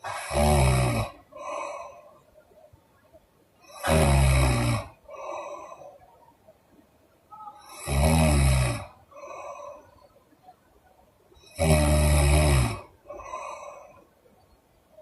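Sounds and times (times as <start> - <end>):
woman snoring: 0.0 - 1.9, 3.7 - 5.7, 7.6 - 9.9, 11.5 - 13.8
soft breath: 1.3 - 2.6, 5.0 - 6.4, 9.1 - 10.6, 13.0 - 15.0.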